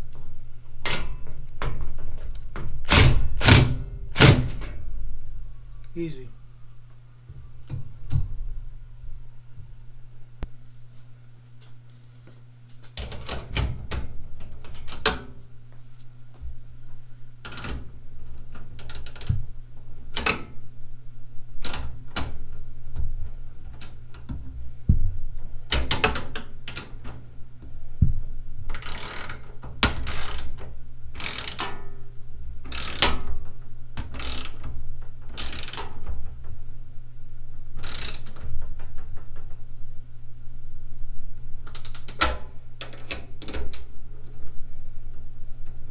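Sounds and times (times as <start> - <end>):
steady low hum: 0.0 - 45.9
ratcheting wrench clicking: 17.4 - 17.8, 18.5 - 19.4, 25.7 - 27.0, 28.7 - 30.6, 31.2 - 31.8, 32.7 - 33.3, 34.0 - 34.7, 35.3 - 36.1, 37.8 - 38.7.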